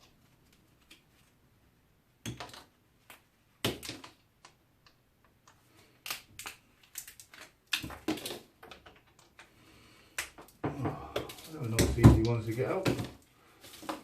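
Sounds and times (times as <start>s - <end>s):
hand tools tapping plastic and metal: 10.2s - 14.0s.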